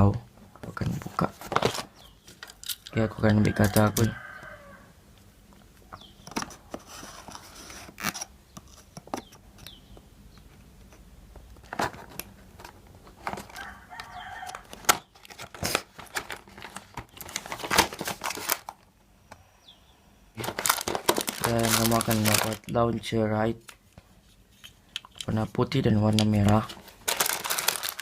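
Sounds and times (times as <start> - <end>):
rooster crowing: 3.0 - 5.0, 13.5 - 14.8
cardboard packaging tearing: 14.5 - 18.8, 20.4 - 22.7, 26.4 - 28.0.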